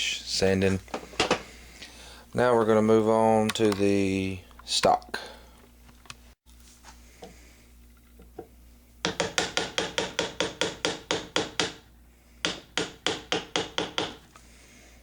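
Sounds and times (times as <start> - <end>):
hammer tapping a chisel: 8.4 - 11.8, 12.4 - 14.2.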